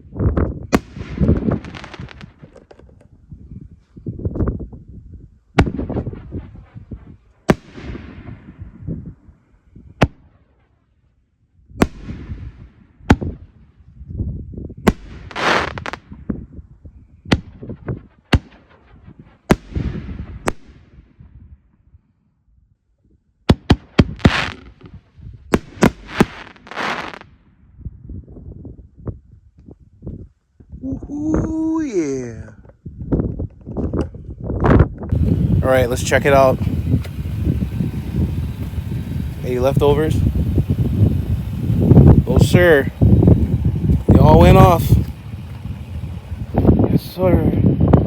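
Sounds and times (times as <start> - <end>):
firework shells launching and bursting: 0.7 - 3.0, 5.6 - 8.6, 14.9 - 16.2, 23.5 - 25.0, 25.6 - 27.3, 35.1 - 48.0.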